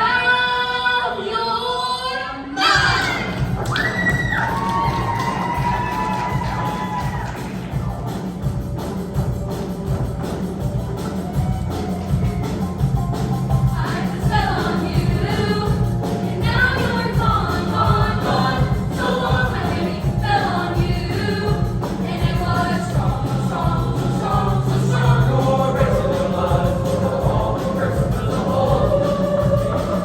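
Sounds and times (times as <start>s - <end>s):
instrumental accompaniment with bass: 2.8s - 30.0s
girls' choir singing: 13.6s - 30.0s.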